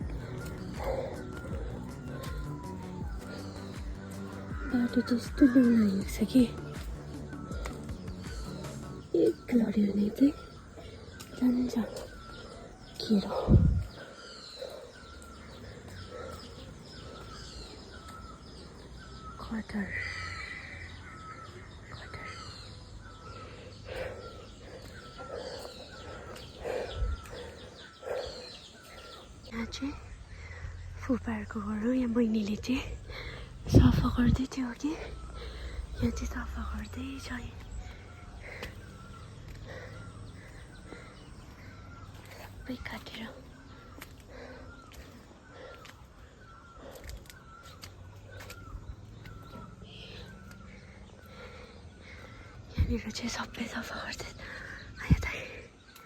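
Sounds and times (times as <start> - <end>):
bird chirping: 0.0 - 56.0
harsh bird calls: 0.0 - 56.0.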